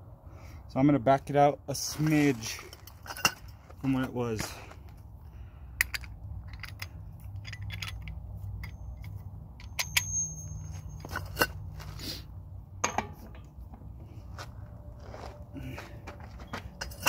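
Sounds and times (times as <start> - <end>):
hand tools clinking on metal: 1.9 - 4.6, 5.8 - 11.8, 16.4 - 17.0.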